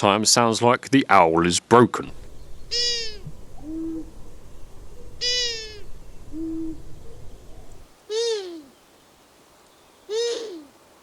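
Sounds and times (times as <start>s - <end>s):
owl whiny squeak call: 2.6s - 4.2s, 4.9s - 8.7s, 10.1s - 10.7s.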